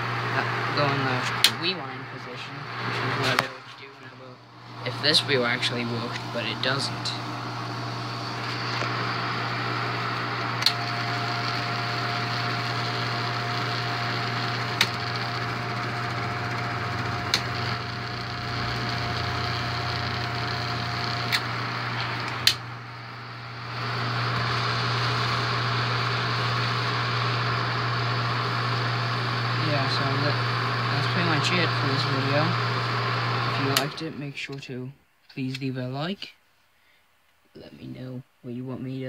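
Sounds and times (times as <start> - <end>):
film projector motor humming: 0.0 - 34.2
faint steady whine: 0.0 - 39.0
projector control clicks: 1.3 - 1.8, 10.1 - 11.6, 14.7 - 15.4, 17.2 - 22.7, 33.5 - 34.6.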